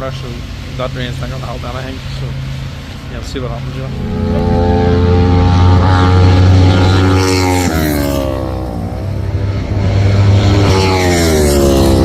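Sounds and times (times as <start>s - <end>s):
motorcycle engine revving: 3.6s - 12.0s.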